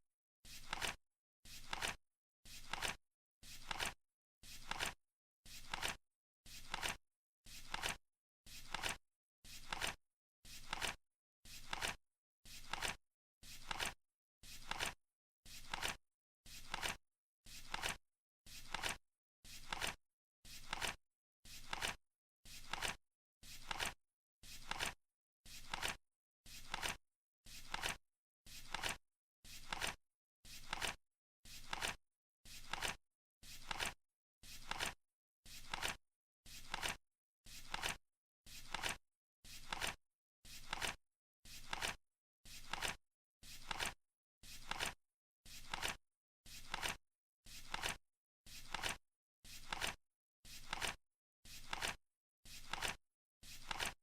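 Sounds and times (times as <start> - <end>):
flip clock cards flapping: 0.6 - 1.0, 1.6 - 2.0, 2.6 - 3.0, 3.6 - 4.0, 4.6 - 5.0, 5.6 - 6.0, 6.6 - 7.0, 8.7 - 9.0, 9.6 - 10.0, 10.6 - 11.0, 11.6 - 12.0, 12.6 - 13.0, 13.6 - 14.0, 14.6 - 15.0, 15.6 - 16.0, 16.6 - 17.0, 18.7 - 19.0, 19.6 - 20.0, 20.6 - 21.0, 21.6 - 22.0, 22.6 - 23.0, 23.6 - 24.0, 24.6 - 25.0, 25.6 - 26.0, 26.6 - 27.0, 27.7 - 28.0, 28.7 - 29.0, 29.6 - 30.0, 30.6 - 31.0, 31.6 - 32.0, 32.6 - 33.0, 33.6 - 34.0, 34.6 - 35.0, 35.6 - 36.0, 36.6 - 37.0, 37.7 - 38.0, 38.7 - 39.0, 39.6 - 40.0, 40.6 - 41.0, 41.6 - 42.0, 42.6 - 43.0, 43.6 - 44.0, 44.6 - 45.0, 45.6 - 46.0, 46.6 - 47.0, 47.7 - 48.0, 48.7 - 49.0, 49.6 - 50.0, 50.6 - 51.0, 51.6 - 52.0, 52.6 - 53.0, 53.6 - 54.0.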